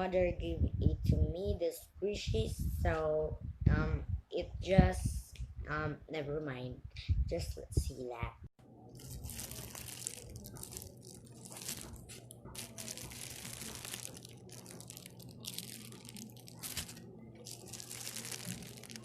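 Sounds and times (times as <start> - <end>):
faint low hum: 0.0 - 19.0
squishy toy being squeezed: 9.0 - 19.0.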